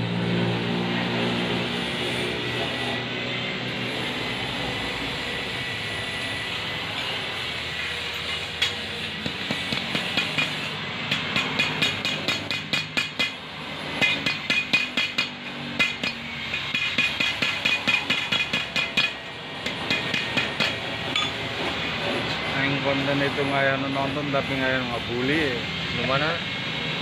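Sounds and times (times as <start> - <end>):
hammer tapping on steel: 8.6 - 13.4, 14.0 - 21.4.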